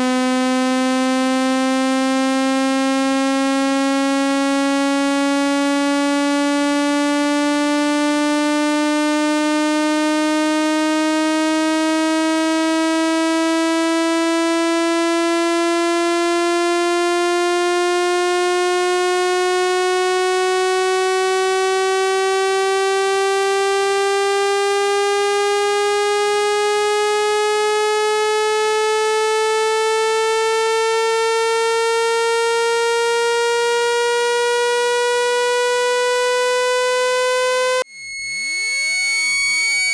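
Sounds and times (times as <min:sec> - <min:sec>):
buzzy electronic tone rising: 0:29.0 - 0:39.9.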